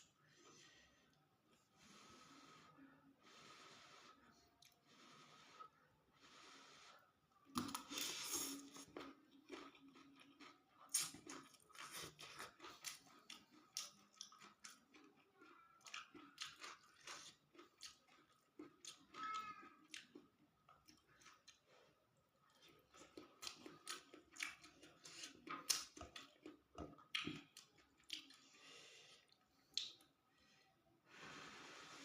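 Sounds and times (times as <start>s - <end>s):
chewing and crunching food: 7.4s - 30.2s.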